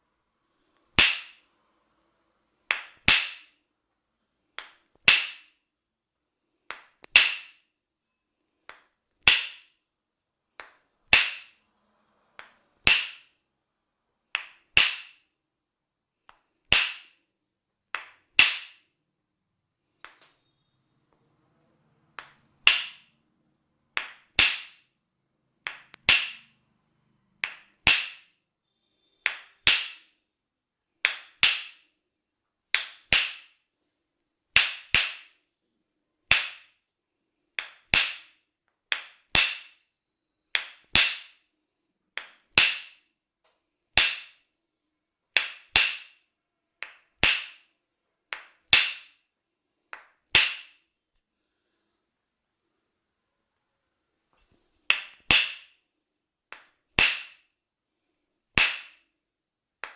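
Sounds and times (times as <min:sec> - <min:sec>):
percussive massage strikes: 0:00.9 - 0:01.5, 0:02.6 - 0:03.6, 0:04.6 - 0:05.7, 0:06.7 - 0:07.7, 0:08.7 - 0:09.8, 0:10.6 - 0:11.6, 0:12.3 - 0:13.4, 0:16.2 - 0:17.2, 0:22.1 - 0:23.2, 0:23.9 - 0:25.0, 0:25.6 - 0:26.6, 0:27.3 - 0:28.4, 0:32.7 - 0:33.6, 0:37.6 - 0:39.8, 0:46.8 - 0:47.7, 0:56.5 - 0:57.5, 0:58.6 - 0:59.0.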